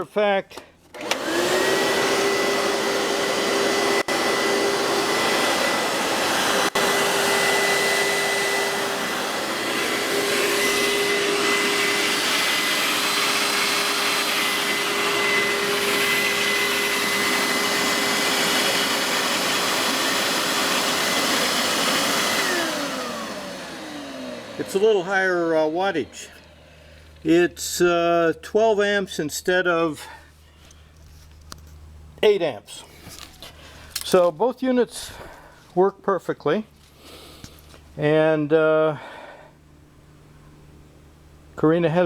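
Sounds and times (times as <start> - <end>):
carpet cleaner motor whine: 0.9 - 27.2
suction fan rushing: 0.9 - 28.2.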